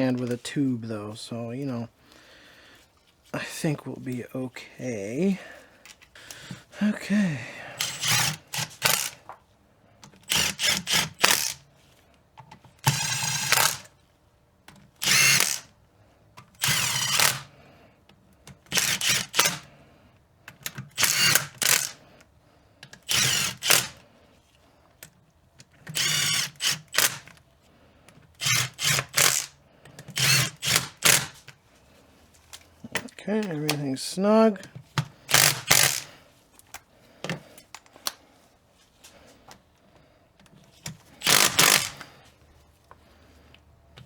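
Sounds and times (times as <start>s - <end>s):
cordless power tool motor whine: 7.8s - 9.2s, 15.0s - 15.7s, 16.6s - 17.5s, 23.1s - 24.0s, 28.4s - 29.5s, 35.3s - 36.1s, 41.2s - 42.1s.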